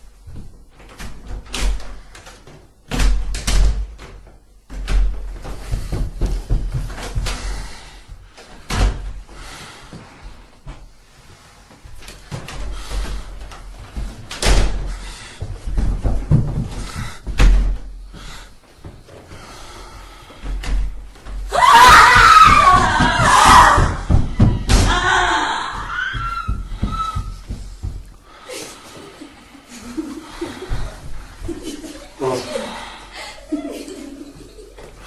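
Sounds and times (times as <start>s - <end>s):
heavy door slams: 14.3s - 15.2s, 20.6s - 28.0s.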